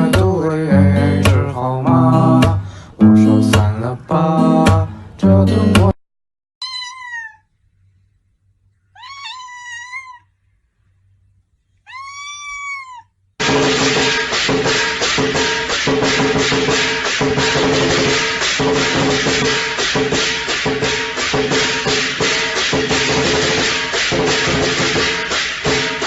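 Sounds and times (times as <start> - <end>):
loud music with steady beat: 0.0 - 2.6, 3.4 - 3.8, 4.5 - 4.9, 13.4 - 26.0
cat meowing: 6.6 - 7.5, 8.9 - 10.3, 11.8 - 13.2.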